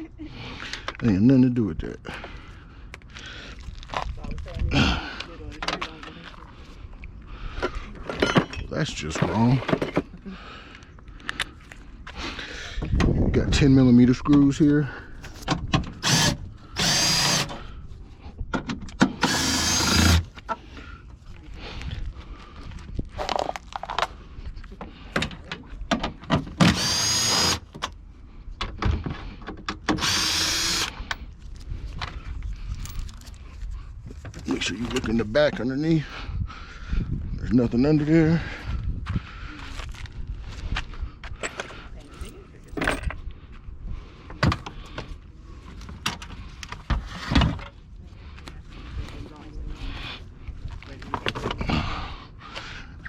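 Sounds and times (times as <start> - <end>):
power drill bursts: 16.0 - 17.6, 19.2 - 20.2, 26.6 - 27.7, 29.9 - 30.9.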